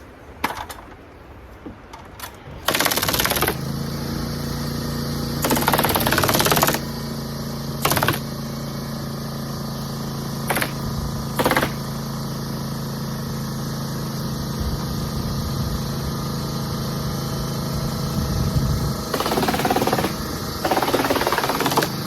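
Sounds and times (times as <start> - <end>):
staple gun firing in bursts: 2.2 - 3.7, 5.4 - 6.9, 7.8 - 8.4, 10.4 - 11.9, 19.1 - 22.0
motor humming: 2.4 - 22.0.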